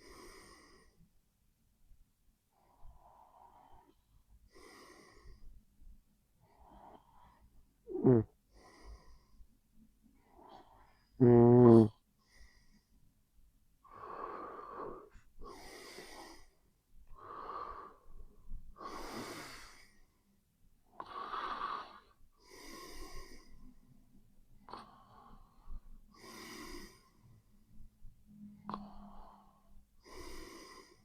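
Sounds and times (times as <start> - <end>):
person snoring: 7.9 - 8.3, 11.2 - 12.0.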